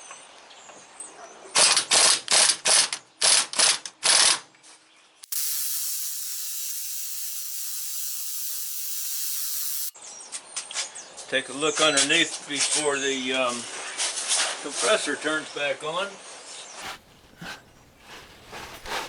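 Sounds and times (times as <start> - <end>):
air impact wrench hammering: 5.2 - 10.0
steady air hiss: 5.3 - 10.0.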